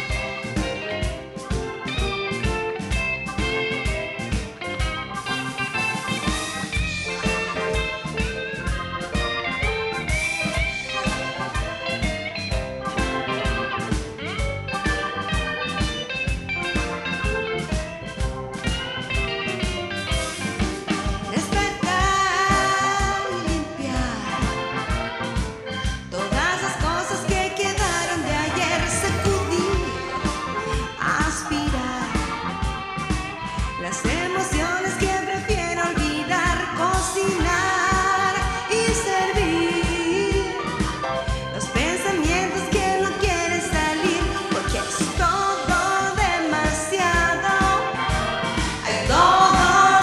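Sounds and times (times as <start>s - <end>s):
steady drum beat: 0.0s - 23.1s, 25.4s - 35.1s, 36.4s - 50.0s
electric guitar: 0.0s - 50.0s
rock blues song: 0.0s - 50.0s
woman singing with vibrato: 21.2s - 24.8s, 26.0s - 32.7s, 33.7s - 50.0s.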